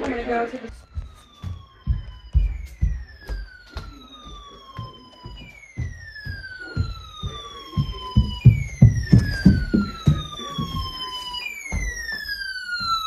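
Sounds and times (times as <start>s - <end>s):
low knocks and thumps: 5.4s - 11.0s.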